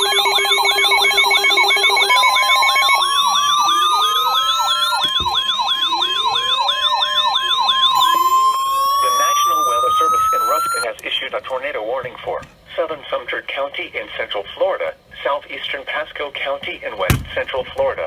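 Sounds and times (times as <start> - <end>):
fast yelping siren: 0.0 - 10.9
pulsing beeps: 0.0 - 10.9.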